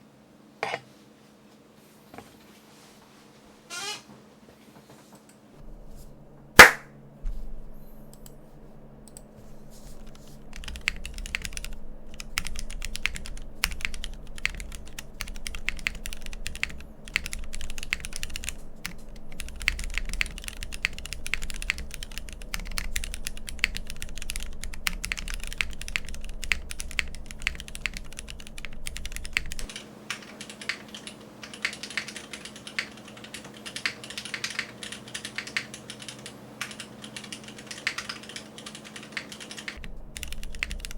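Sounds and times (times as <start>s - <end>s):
fast mechanical keyboard typing: 10.0s - 40.9s.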